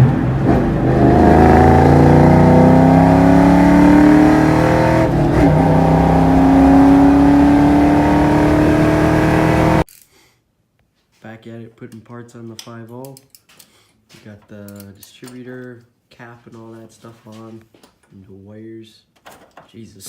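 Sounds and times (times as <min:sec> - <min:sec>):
car engine accelerating hard: 0:00.0 - 0:09.8.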